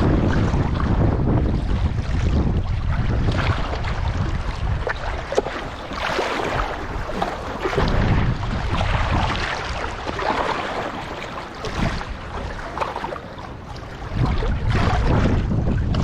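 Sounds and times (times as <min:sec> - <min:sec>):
wind gusting on microphone: 0:00.0 - 0:16.0
river waves lapping: 0:02.0 - 0:15.5.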